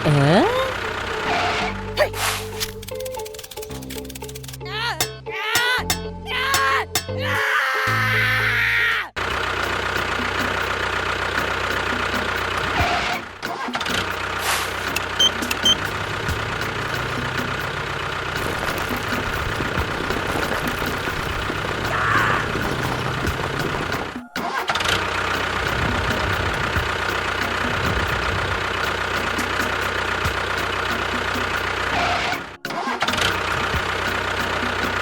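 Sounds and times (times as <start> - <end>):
small motor whining: 9.2 - 35.0.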